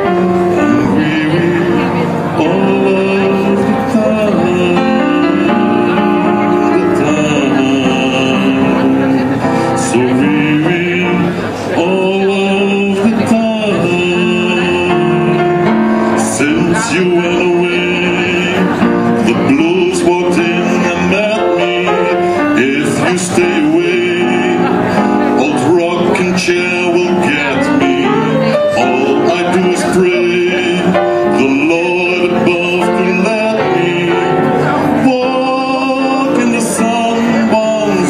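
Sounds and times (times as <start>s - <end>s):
guitar accompaniment: 0.0s - 38.0s
man singing jazz ballad: 0.0s - 38.0s.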